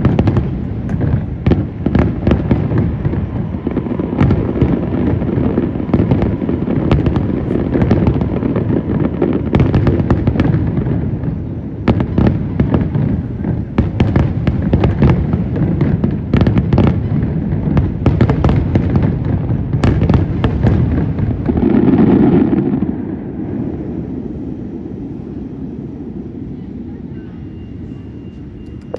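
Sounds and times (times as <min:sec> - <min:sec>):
fireworks cracking: 0:00.0 - 0:26.6
fireworks booming: 0:00.0 - 0:28.9.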